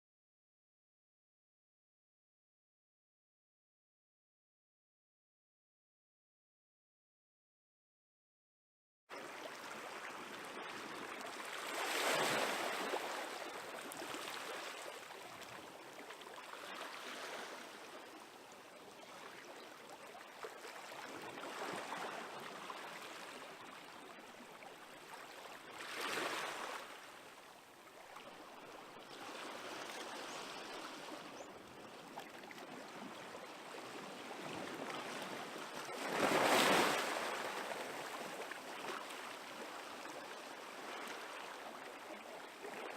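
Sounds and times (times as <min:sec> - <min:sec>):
small waves washing onto shore: 0:09.1 - 0:42.9.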